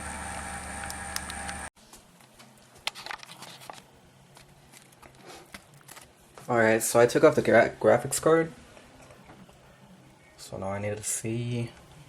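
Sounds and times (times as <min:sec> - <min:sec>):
computer fan hum and whir: 0:00.0 - 0:01.7.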